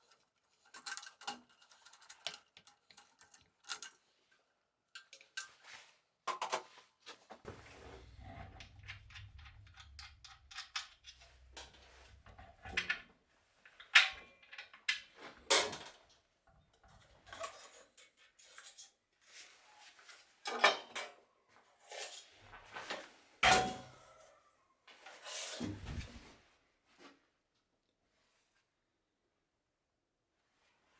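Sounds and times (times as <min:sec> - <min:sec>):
metal tools clinking and knocking: 0:00.6 - 0:04.0.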